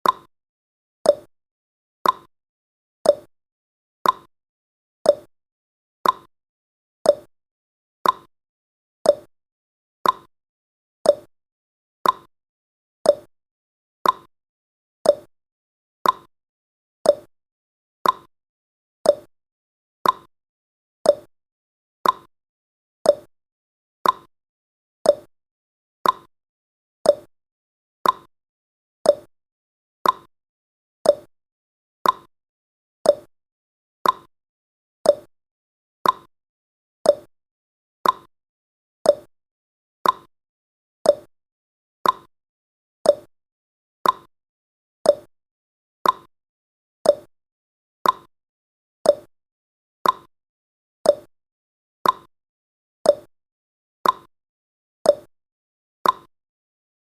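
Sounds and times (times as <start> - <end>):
clock ticking: 18.0 - 18.3, 34.0 - 34.3, 42.0 - 42.3, 50.0 - 50.3, 56.0 - 56.3.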